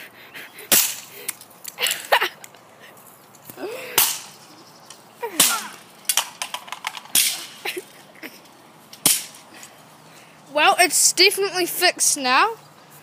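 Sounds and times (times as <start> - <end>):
plastic toy gun being smashed: 5.4 - 7.6.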